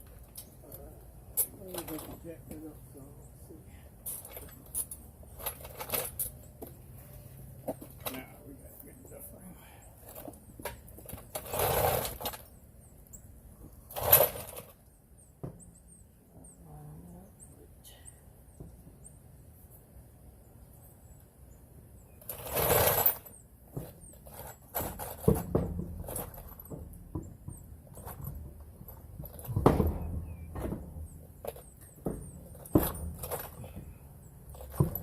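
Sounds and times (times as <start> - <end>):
metallic knocks and clatter: 22.2 - 35.0.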